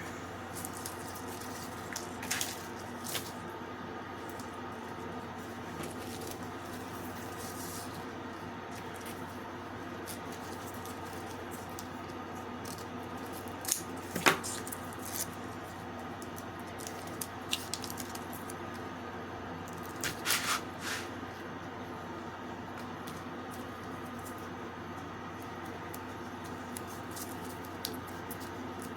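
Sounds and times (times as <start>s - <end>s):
steady background hum: 0.0s - 28.9s
scraping or rustling: 20.0s - 21.2s.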